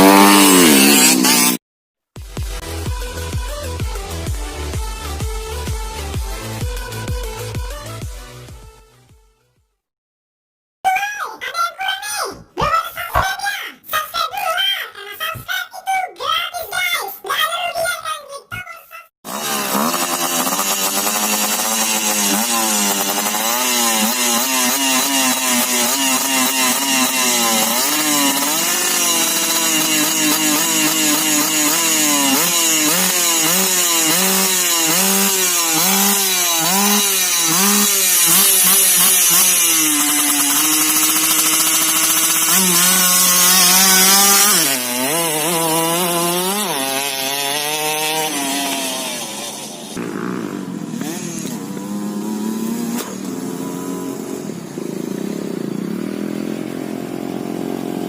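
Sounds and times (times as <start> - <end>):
motorcycle engine revving: 0.0 - 1.6, 19.3 - 58.0.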